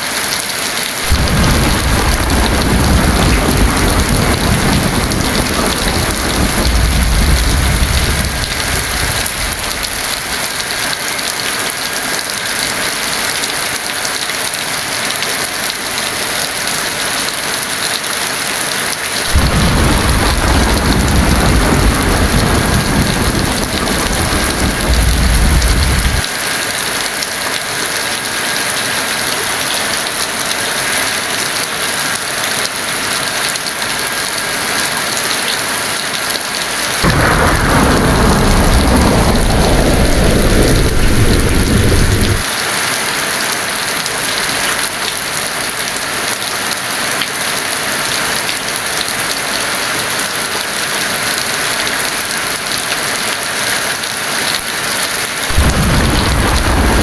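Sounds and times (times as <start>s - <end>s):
heavy rain: 0.0s - 57.0s
thunder rumbling: 1.1s - 10.9s, 19.3s - 26.3s, 37.0s - 42.5s, 55.5s - 57.0s.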